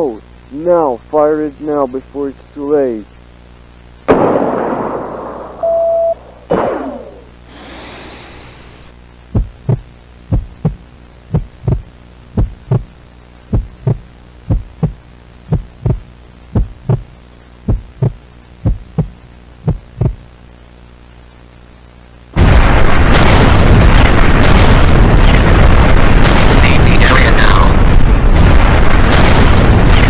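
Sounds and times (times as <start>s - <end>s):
low steady hum: 0.0s - 30.0s
loud blast: 4.1s - 8.9s, 22.4s - 30.0s
heartbeat double thumps: 9.3s - 20.3s.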